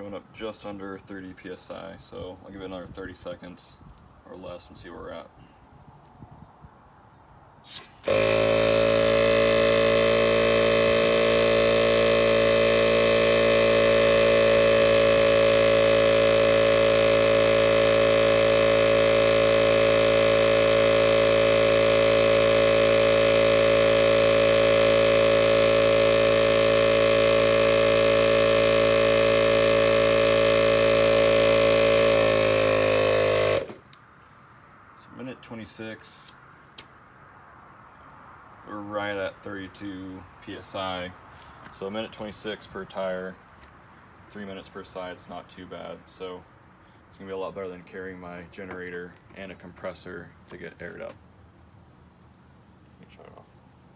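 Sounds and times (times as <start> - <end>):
air compressor humming: 7.7 - 33.9.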